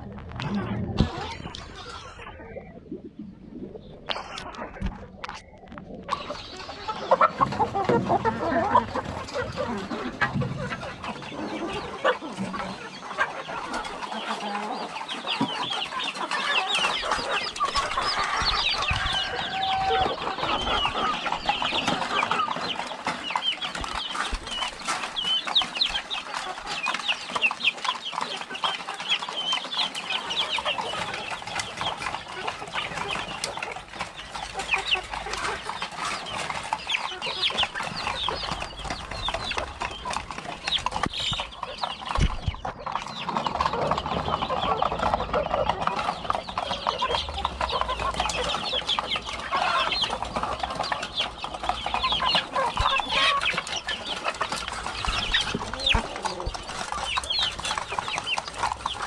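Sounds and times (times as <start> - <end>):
chickens clucking: 0.0 - 59.0.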